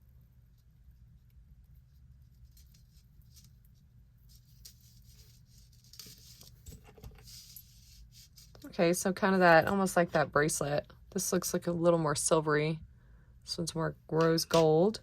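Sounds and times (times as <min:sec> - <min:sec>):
low steady hum: 0:00.0 - 0:15.0
jewelry rustling and clicking: 0:04.3 - 0:08.7.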